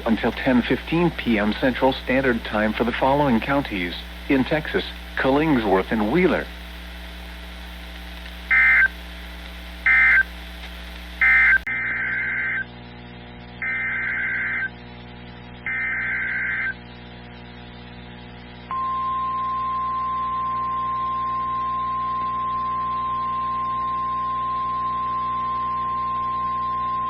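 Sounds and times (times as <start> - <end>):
steady single-pitch alarm tone: 18.7 - 27.0.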